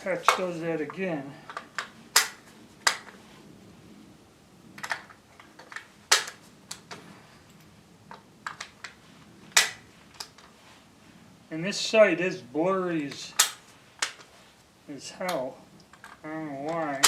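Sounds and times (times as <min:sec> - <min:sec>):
rifle metallic clicks: 0:13.3 - 0:14.3.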